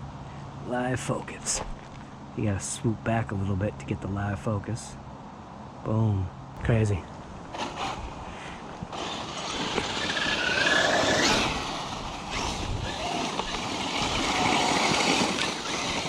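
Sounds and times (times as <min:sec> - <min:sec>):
tyre and dirt noise: 0:00.6 - 0:03.5, 0:06.6 - 0:16.0
rc car motor whine: 0:07.5 - 0:16.0.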